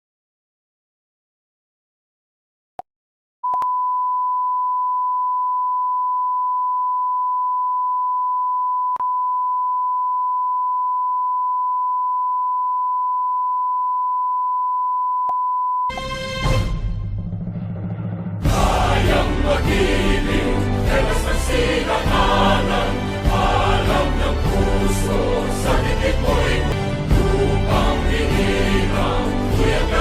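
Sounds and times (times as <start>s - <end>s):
music: 15.9s - 30.0s.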